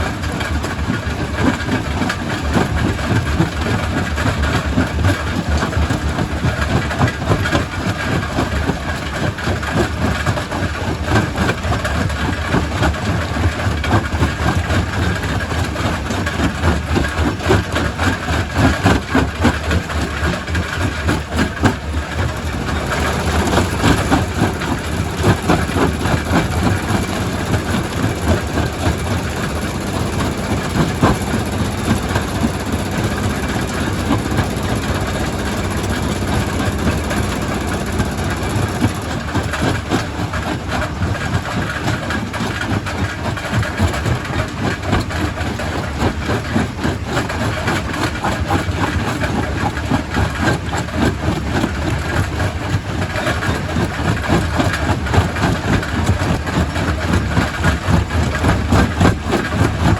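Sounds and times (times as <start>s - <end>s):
low machine drone: 21.3s - 41.6s.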